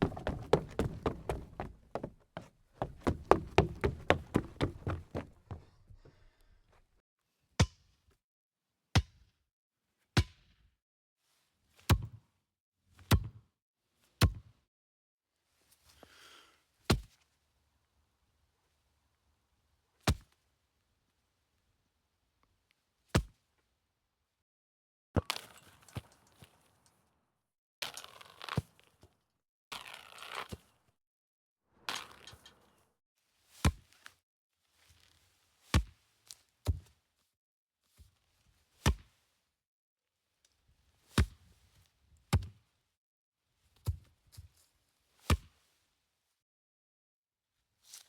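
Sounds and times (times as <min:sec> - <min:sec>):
rapid knocks: 0:00.0 - 0:02.2, 0:02.8 - 0:05.6
sharp knocks: 0:00.0 - 0:02.2, 0:02.8 - 0:05.6.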